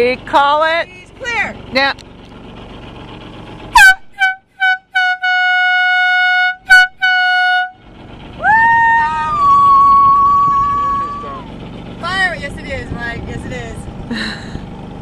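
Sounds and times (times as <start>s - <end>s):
air horn blasts: 3.7s - 7.8s.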